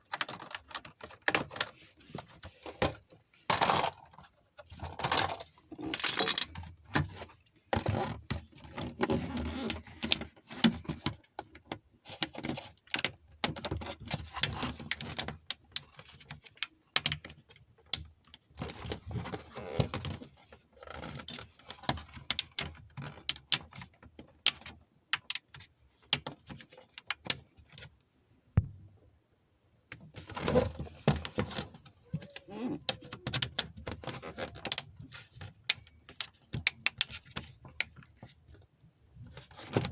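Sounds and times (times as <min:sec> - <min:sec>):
plastic toy parts clicking: 0:04.8 - 0:06.7.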